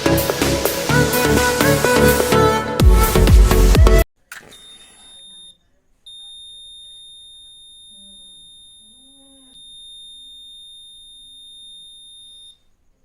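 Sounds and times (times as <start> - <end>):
high-pitched electronic alarm tone: 4.6 - 12.6.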